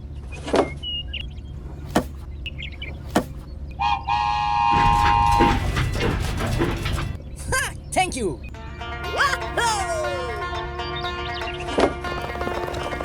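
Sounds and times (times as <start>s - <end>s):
small vehicle engine droning: 0.0s - 7.4s, 9.9s - 13.0s
vehicle horn: 3.8s - 5.6s.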